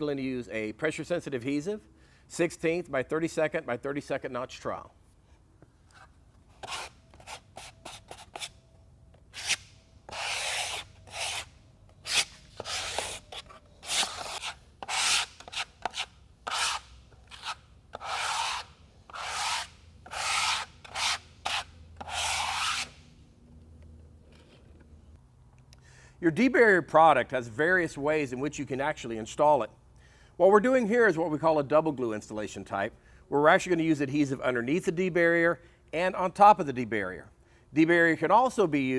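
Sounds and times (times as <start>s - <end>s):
trowel scraping adhesive: 6.6s - 8.6s, 9.3s - 23.0s.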